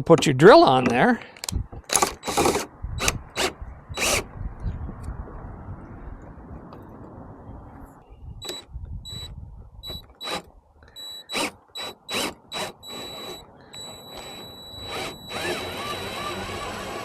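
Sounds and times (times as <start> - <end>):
power drill motor whine: 2.0 - 4.2, 8.4 - 17.0.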